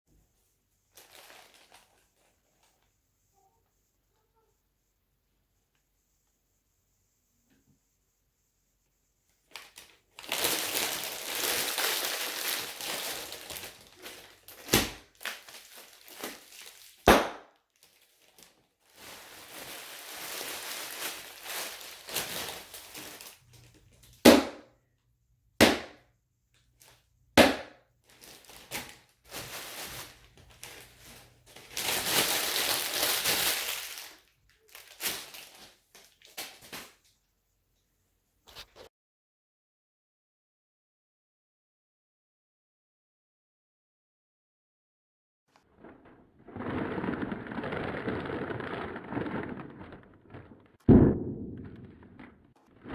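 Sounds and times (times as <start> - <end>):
dense crackling and crinkling: 0.8 - 2.9, 9.4 - 24.7, 25.6 - 37.2, 45.6 - 52.9
sharp bangs: 50.8 - 52.9.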